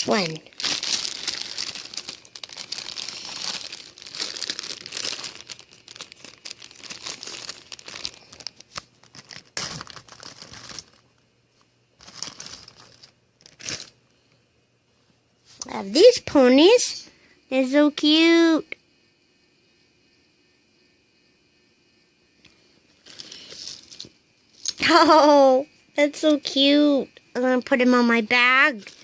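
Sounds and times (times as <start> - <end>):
packaging torn and crinkled: 0.1 - 11.1, 12.0 - 14.0, 28.8 - 29.0.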